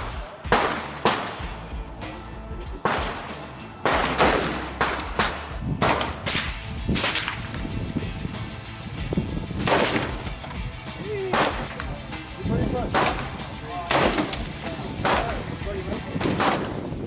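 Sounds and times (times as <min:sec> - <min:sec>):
gunshots echoing: 0:00.0 - 0:08.0, 0:09.6 - 0:17.0.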